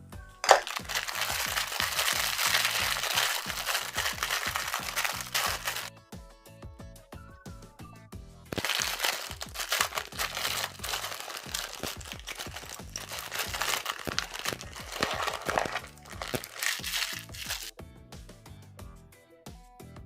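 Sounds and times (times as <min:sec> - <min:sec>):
background music: 0:00.0 - 0:20.0
food crunching and crinkling: 0:00.4 - 0:05.9, 0:08.5 - 0:17.7.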